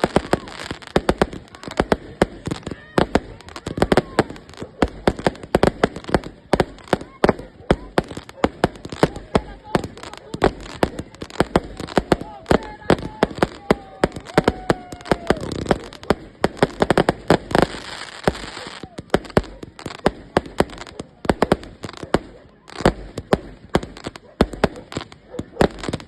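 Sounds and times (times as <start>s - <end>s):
firecrackers banging: 0.0s - 26.0s
hissing crackle: 0.0s - 26.0s
falling firework whistle: 13.6s - 15.9s.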